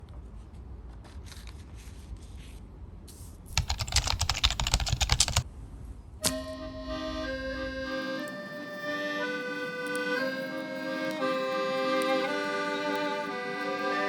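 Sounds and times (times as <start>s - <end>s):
rapid sharp clicks and taps: 3.6s - 5.4s, 8.2s - 14.0s
music with held notes: 6.2s - 14.0s.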